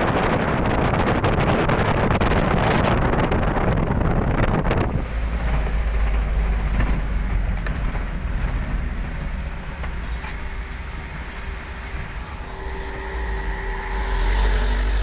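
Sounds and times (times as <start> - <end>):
deep rumble: 0.0 - 15.0
wind buffeting microphone: 0.0 - 15.0.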